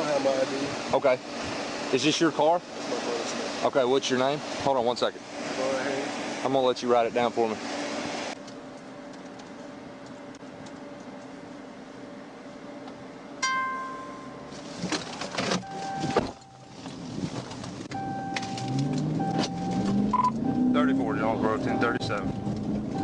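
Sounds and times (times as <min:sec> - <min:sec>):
electronic beeps: 0:15.6 - 0:16.8, 0:17.9 - 0:21.0, 0:21.6 - 0:23.0.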